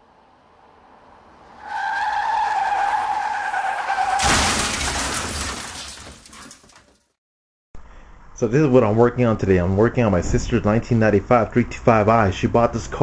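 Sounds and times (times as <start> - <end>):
tire squeal: 1.4 - 4.3.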